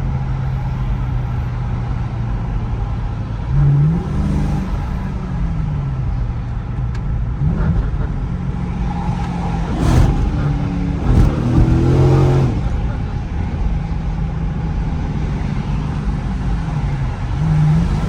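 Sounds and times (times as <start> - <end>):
car engine revving: 3.3 - 18.0
loud rush of noise: 8.5 - 13.6.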